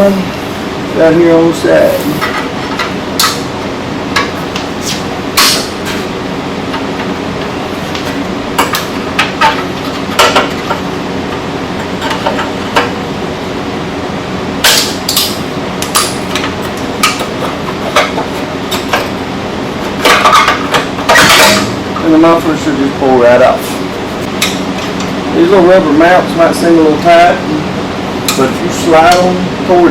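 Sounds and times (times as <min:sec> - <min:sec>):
steady background hum: 0:00.0 - 0:29.9.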